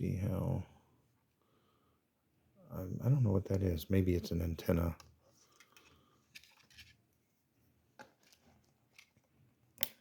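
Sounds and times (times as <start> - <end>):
soft rustles of items handled: 3.0 - 10.0.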